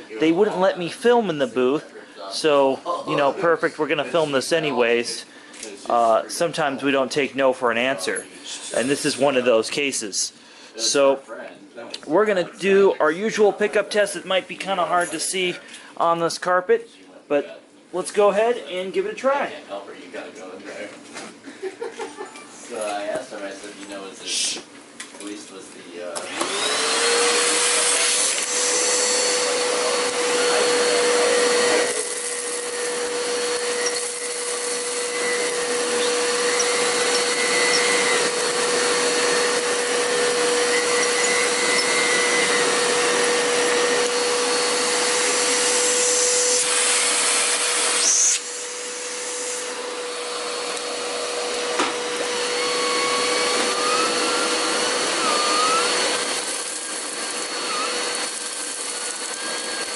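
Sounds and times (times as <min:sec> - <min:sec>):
vacuum cleaner motor whine: 0:26.2 - 0:59.9.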